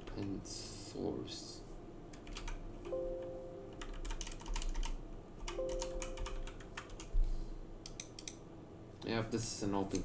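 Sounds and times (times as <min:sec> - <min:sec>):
keyboard keys clicking: 0:02.1 - 0:07.1, 0:07.8 - 0:08.4.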